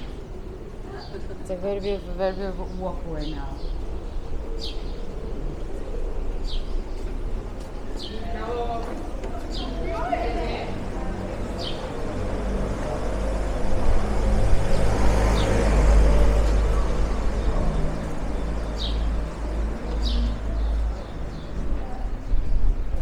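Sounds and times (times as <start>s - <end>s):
vehicle passing by: 8.0s - 22.1s.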